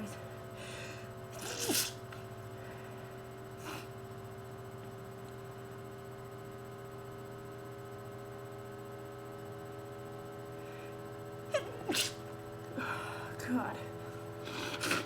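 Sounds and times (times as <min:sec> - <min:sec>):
low room hum: 0:00.0 - 0:15.0
noisy intake of breath: 0:00.5 - 0:04.1, 0:11.8 - 0:13.4
woman sneezing: 0:01.4 - 0:02.0, 0:11.5 - 0:12.2.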